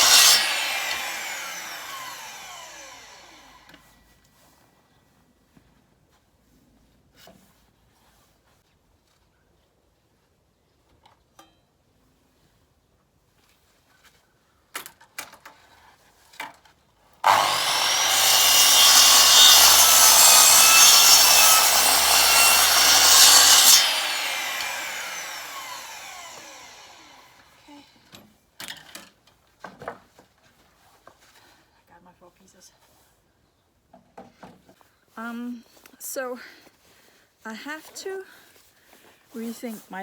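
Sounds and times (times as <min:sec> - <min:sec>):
saw blade winding down whine: 0:00.0 - 0:03.7, 0:17.2 - 0:27.7
electric saw cutting wood: 0:00.0 - 0:03.8, 0:17.2 - 0:27.7.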